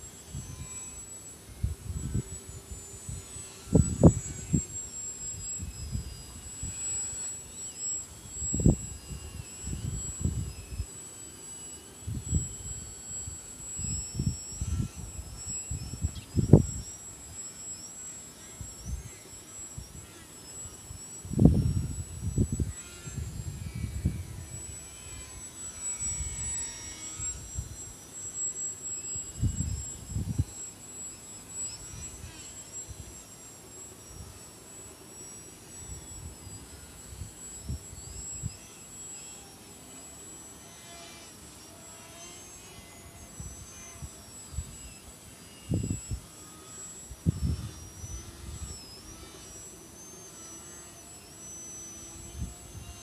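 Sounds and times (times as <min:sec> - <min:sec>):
model plane motor whining: 0:00.0 - 0:53.0
wind on microphone: 0:01.5 - 0:06.8, 0:08.2 - 0:10.9, 0:12.1 - 0:16.9, 0:21.2 - 0:25.2, 0:29.3 - 0:30.5, 0:45.7 - 0:46.3, 0:47.1 - 0:49.4.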